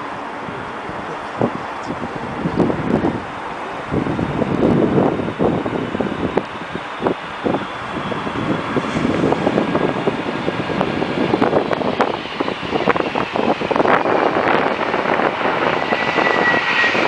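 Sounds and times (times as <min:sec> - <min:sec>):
jet engine whine: 0:00.0 - 0:17.0
wind buffeting microphone: 0:00.0 - 0:17.0.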